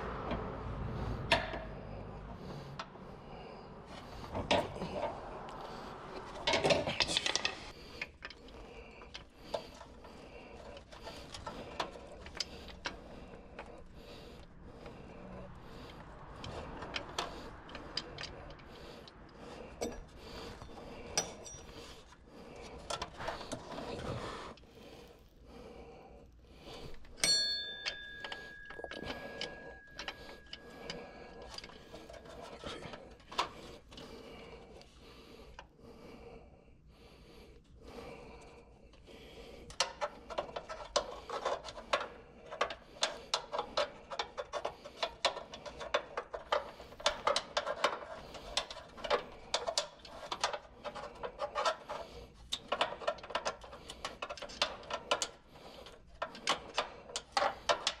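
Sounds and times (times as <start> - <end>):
metal tools clicking and tapping: 1.2 - 2.1, 4.0 - 24.2, 26.7 - 34.1, 39.6 - 58.0
struck metal ringing: 27.2 - 30.7.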